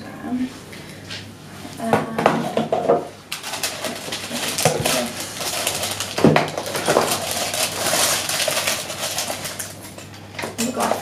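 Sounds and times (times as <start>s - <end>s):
small hard objects clinking: 3.4s - 10.0s.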